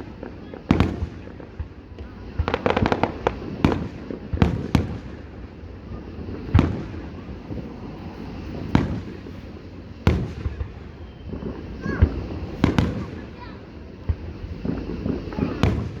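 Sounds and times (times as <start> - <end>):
continuous low rumble: 0.0 - 16.0
fireworks bangs: 0.0 - 16.0.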